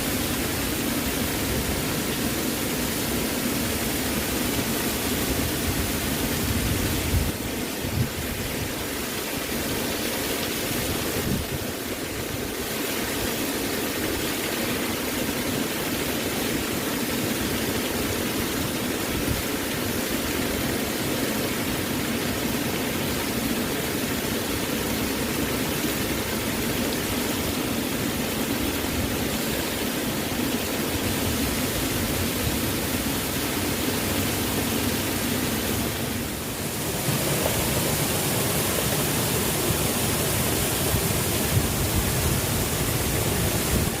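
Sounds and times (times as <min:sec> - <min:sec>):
waterfall rushing: 0:00.0 - 0:44.0.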